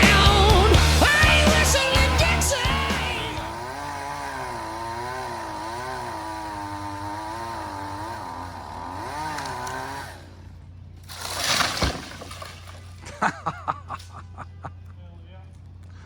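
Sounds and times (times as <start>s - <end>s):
chainsaw cutting tree: 0.0s - 13.2s
tree crashing with thud: 11.0s - 13.0s.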